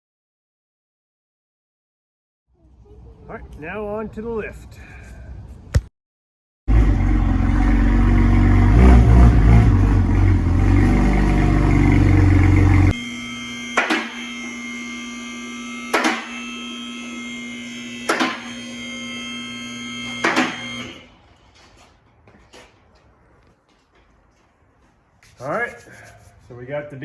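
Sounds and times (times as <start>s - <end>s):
electric pump motor humming: 6.7s - 9.1s, 9.7s - 21.2s.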